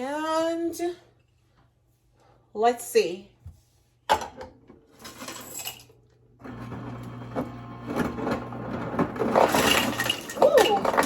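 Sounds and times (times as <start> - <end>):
motor hum: 6.4 - 9.4
ice cubes clattering: 8.7 - 11.0.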